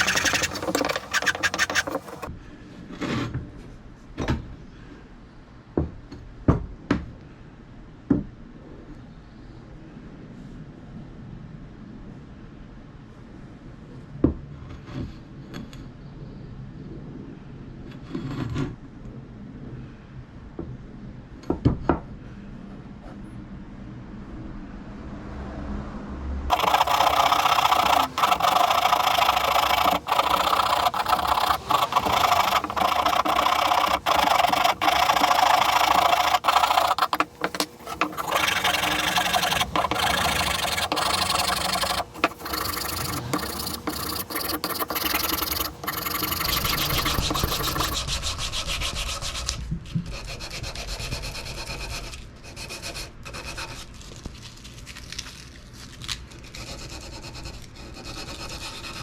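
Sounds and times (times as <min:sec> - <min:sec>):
rasp scraping wooden handle: 0:00.0 - 0:02.3, 0:26.5 - 0:54.0, 0:56.5 - 0:59.0.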